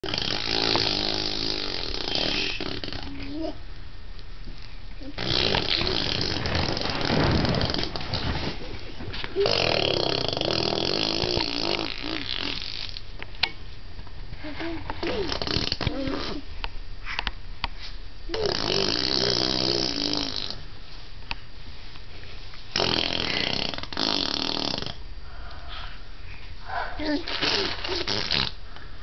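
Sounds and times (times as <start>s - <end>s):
baby blowing raspberries: 0.0s - 3.6s, 5.0s - 8.0s, 9.4s - 13.0s, 27.0s - 28.6s.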